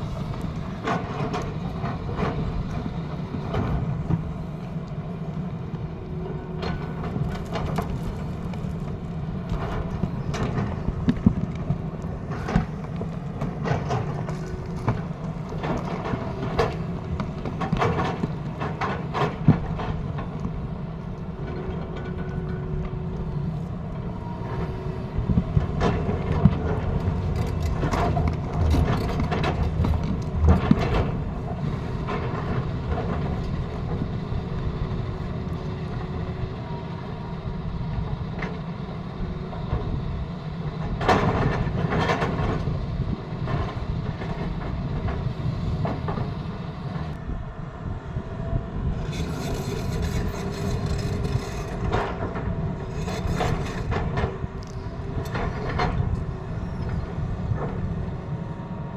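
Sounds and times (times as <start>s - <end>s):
excavator diesel engine running: 0.0s - 58.9s.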